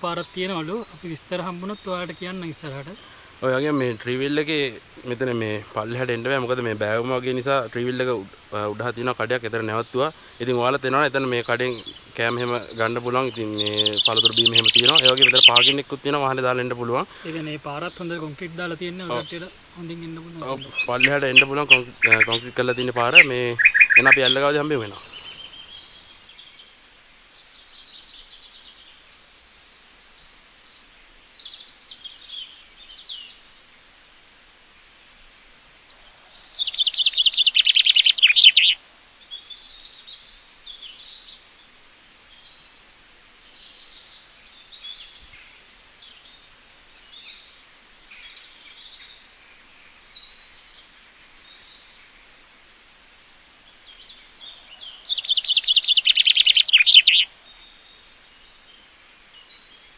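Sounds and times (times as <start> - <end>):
bird rapid trill: 0.0 - 26.1, 36.5 - 38.8, 54.8 - 57.3
birds chirping: 0.0 - 33.7, 34.3 - 59.9.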